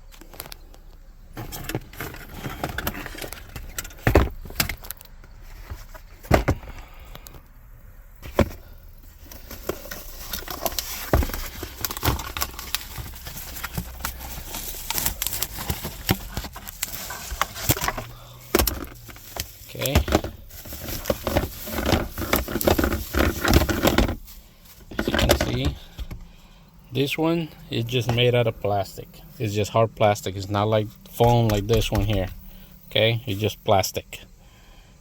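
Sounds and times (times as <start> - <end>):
packaging rustling and crackling: 8.2 - 26.0.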